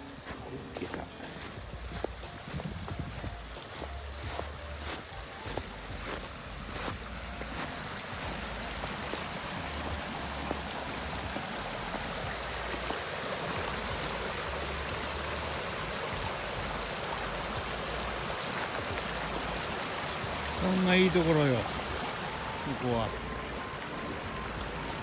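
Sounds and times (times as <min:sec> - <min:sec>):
footsteps: 0:00.0 - 0:11.6
river water rushing: 0:00.0 - 0:25.0.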